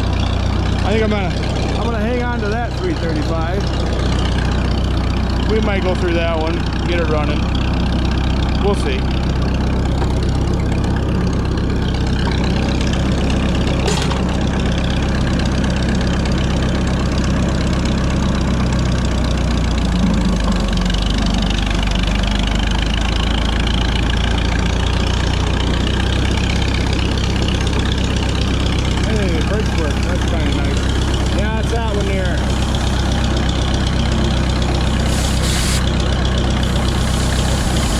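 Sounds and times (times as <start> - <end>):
tractor engine idling: 0.0 - 37.9.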